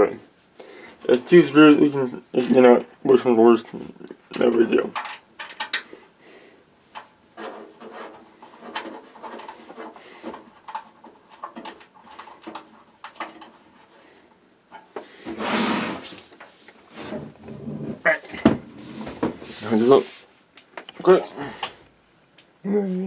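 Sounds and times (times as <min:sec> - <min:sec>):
case panel scraping slide: 0:15.3 - 0:16.8, 0:18.1 - 0:20.3.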